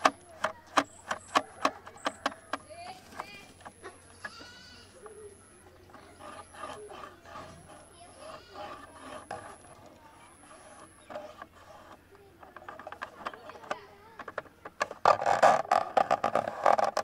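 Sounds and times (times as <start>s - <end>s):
fingers rubbing on camera body: 5.7s - 17.0s.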